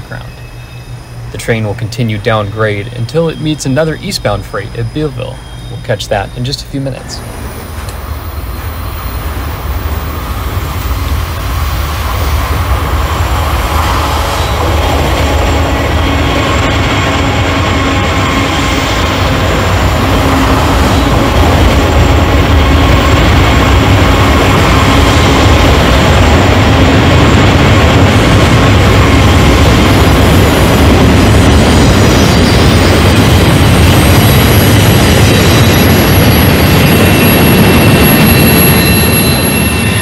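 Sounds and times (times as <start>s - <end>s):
model diesel locomotive rumbling: 0.0s - 40.0s.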